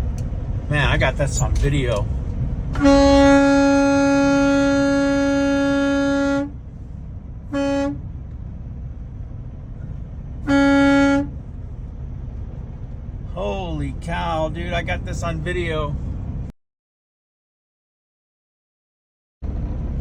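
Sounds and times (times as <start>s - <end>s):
traffic rumble: 0.0s - 16.5s, 19.4s - 20.0s
wind: 0.0s - 16.5s, 19.4s - 20.0s
vehicle horn blasts: 2.8s - 6.6s, 7.5s - 8.1s, 10.4s - 11.4s.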